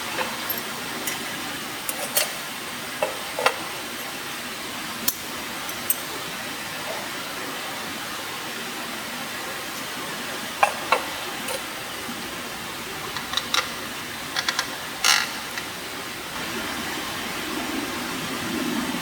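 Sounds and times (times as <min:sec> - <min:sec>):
utensils clicking and clinking: 0:00.0 - 0:04.2, 0:05.0 - 0:06.3, 0:10.6 - 0:11.8, 0:13.1 - 0:15.9.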